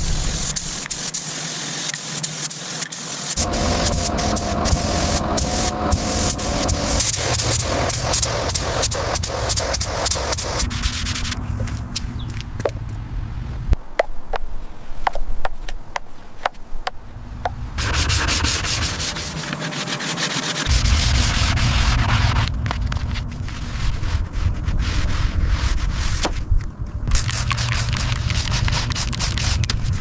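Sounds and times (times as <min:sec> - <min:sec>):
abrasive sanding: 0:00.1 - 0:11.6, 0:17.8 - 0:26.2.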